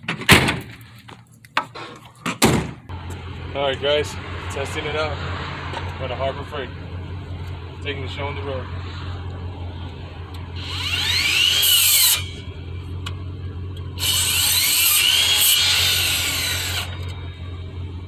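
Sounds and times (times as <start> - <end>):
miter saw motor whining: 8.4 - 18.0.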